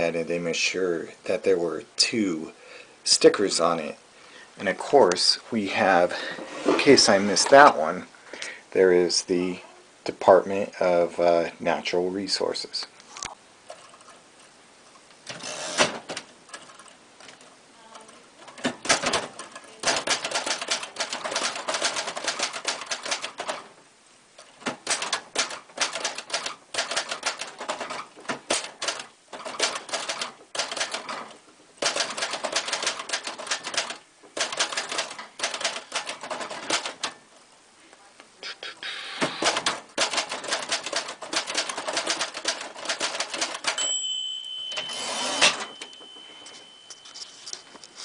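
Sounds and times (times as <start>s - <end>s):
manual typewriter typing: 15.3s - 23.7s, 24.4s - 37.2s, 38.9s - 43.9s, 44.7s - 47.7s.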